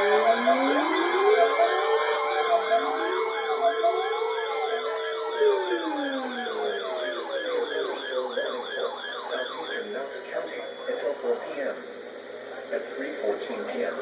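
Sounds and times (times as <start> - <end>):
sirens yelping and wailing: 0.0 - 11.2.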